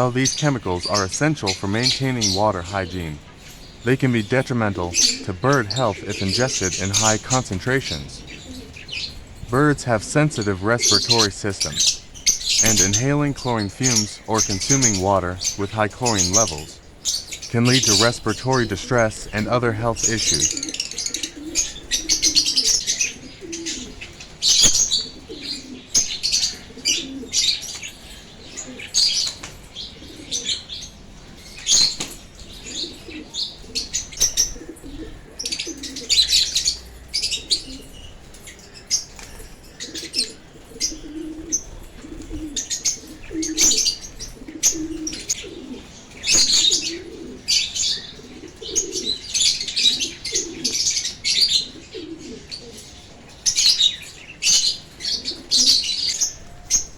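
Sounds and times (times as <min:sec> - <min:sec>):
lower repeated bird call: 0:00.0 - 0:27.7
lovebirds chirping shrilly: 0:00.0 - 0:56.9.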